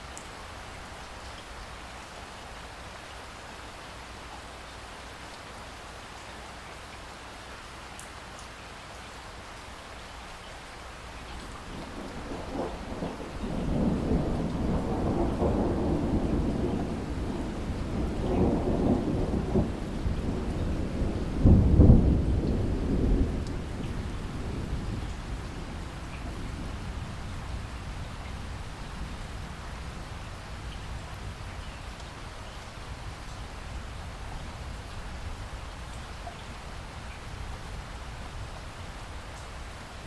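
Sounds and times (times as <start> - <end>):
steady rain falling: 0.0 - 40.0
distant thunder rumbling: 11.4 - 31.5.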